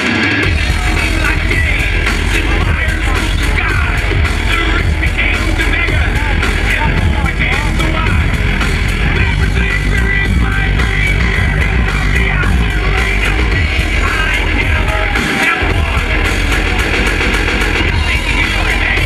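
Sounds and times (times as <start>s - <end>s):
heavy bass beat: 0.0s - 19.0s
live band music: 0.0s - 19.0s.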